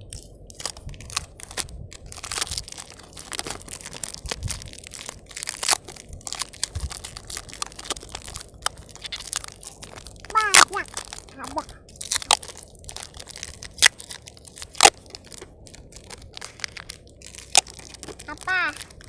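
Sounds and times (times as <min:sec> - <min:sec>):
crunching and crinkling: 0:00.0 - 0:19.0
low rumble: 0:00.0 - 0:19.0.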